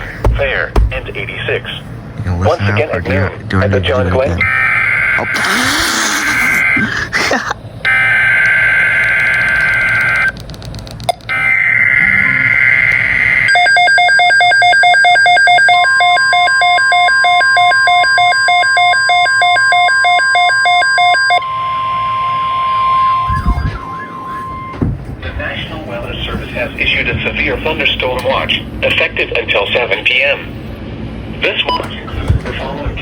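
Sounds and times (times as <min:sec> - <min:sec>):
steady warning alarm tone: 0:07.8 - 0:10.3, 0:11.3 - 0:28.9
rapid pulsing electronic beeps: 0:11.4 - 0:13.6, 0:22.7 - 0:25.0
screeching data bursts: 0:22.6 - 0:24.8.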